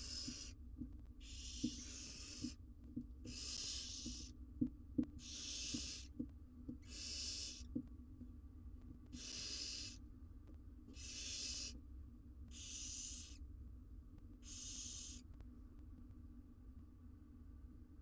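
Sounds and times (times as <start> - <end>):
owl chicks rasping hiss calls: 0.0 - 0.6, 1.2 - 2.6, 3.2 - 4.4, 5.2 - 6.2, 6.8 - 7.7, 9.1 - 10.0, 10.9 - 11.8, 12.5 - 13.4, 14.4 - 15.3.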